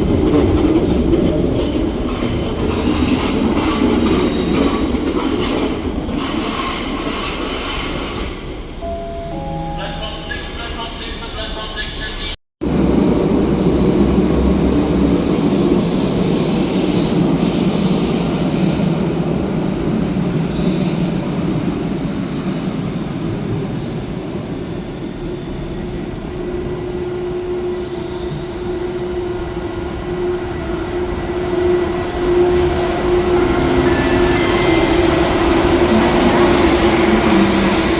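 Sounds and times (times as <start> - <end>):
train rumbling: 0.0 - 37.9
train wheels squealing: 2.9 - 8.6, 15.1 - 19.7.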